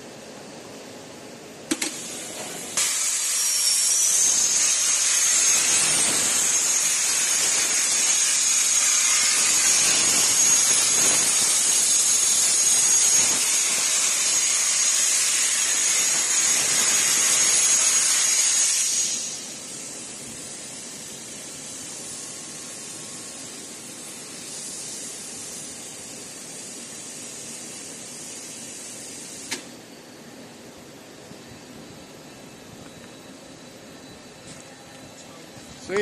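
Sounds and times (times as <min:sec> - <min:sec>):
plasma torch arc hissing: 0:01.7 - 0:29.8
high thin whistle: 0:02.8 - 0:19.6.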